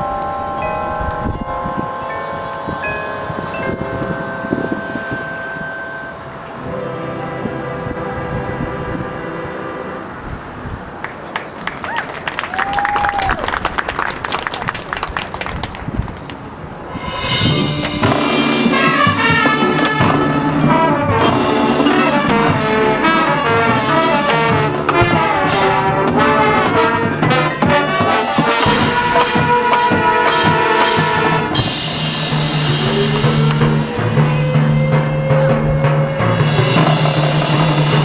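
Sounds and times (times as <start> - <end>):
brass section playing: 0.0 - 10.6, 16.8 - 38.0
marching drums: 16.9 - 38.0.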